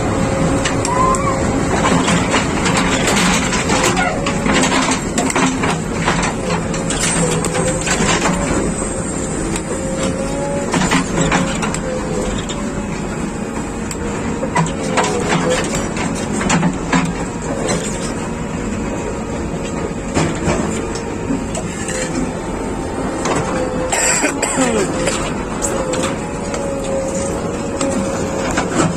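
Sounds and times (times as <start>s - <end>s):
diesel engine running: 0.0s - 28.9s
metal clanks and knocks: 1.7s - 8.8s, 23.2s - 28.9s.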